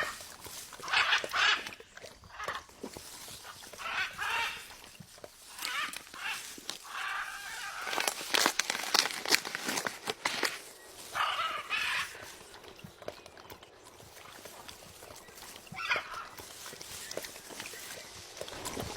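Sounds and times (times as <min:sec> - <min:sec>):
parrots chirping and chattering: 0:00.0 - 0:18.9.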